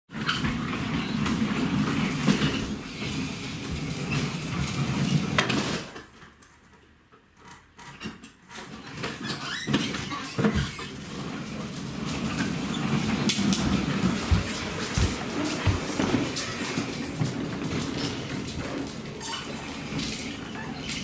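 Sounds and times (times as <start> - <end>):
knocks and clatter: 12.2 - 18.8.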